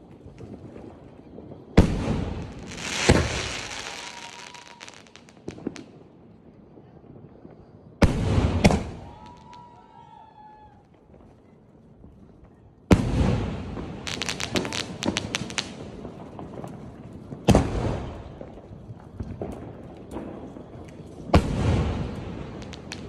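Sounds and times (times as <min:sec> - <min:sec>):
firework bangs with rumble: 0:01.8 - 0:04.5, 0:08.0 - 0:09.3.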